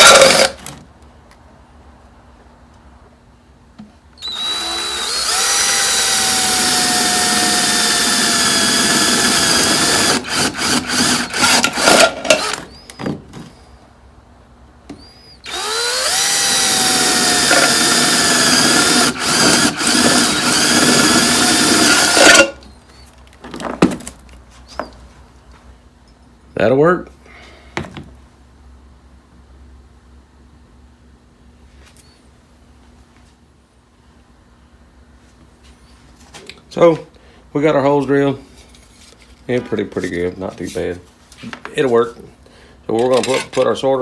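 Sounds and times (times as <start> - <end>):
electric drill whining: 0.0 - 0.5, 4.2 - 12.8, 15.0 - 22.6
drill trigger blips: 4.2 - 13.0, 15.4 - 22.6.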